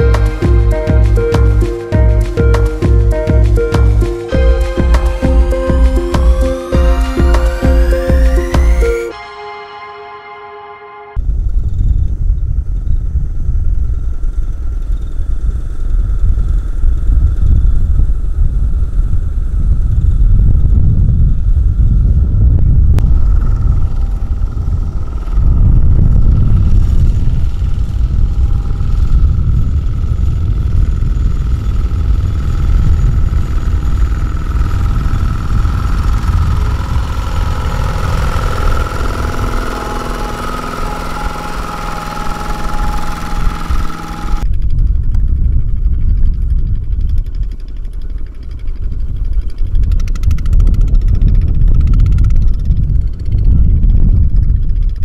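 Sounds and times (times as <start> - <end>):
high-pitched whine: 0.0 - 20.4, 22.0 - 44.5.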